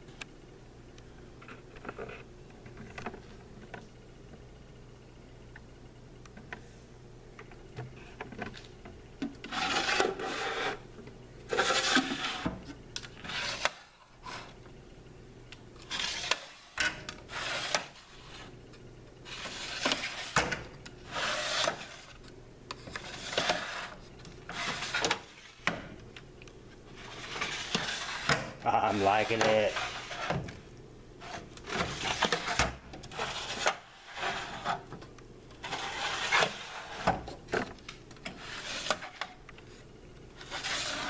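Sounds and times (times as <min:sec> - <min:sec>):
rough scraping strokes: 0:09.5 - 0:10.8, 0:21.1 - 0:22.1, 0:27.0 - 0:28.3, 0:35.6 - 0:37.1, 0:38.4 - 0:39.1, 0:40.4 - 0:41.0.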